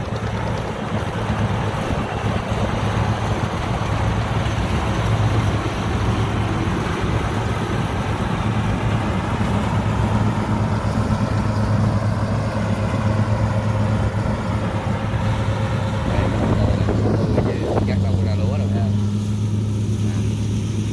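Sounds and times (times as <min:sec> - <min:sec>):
machine rattling: 0:00.0 - 0:14.6
combine harvester engine humming: 0:00.0 - 0:20.9.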